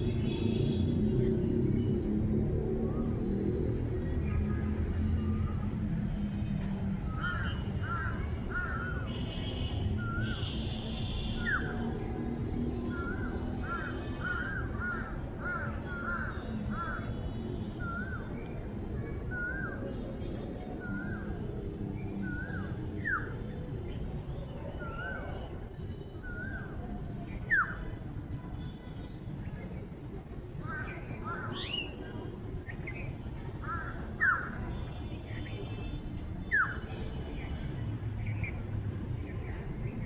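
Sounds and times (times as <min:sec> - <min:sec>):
bird calling: 0:33.6 - 0:34.6.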